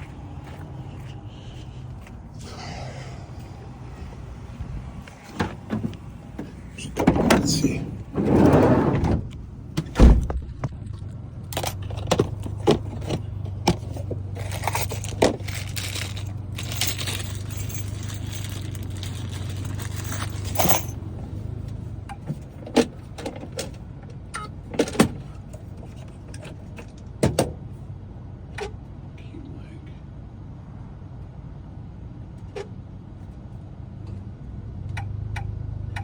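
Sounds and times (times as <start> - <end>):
steady low hum: 0.0 - 22.1
metal keys jangling: 11.5 - 21.0.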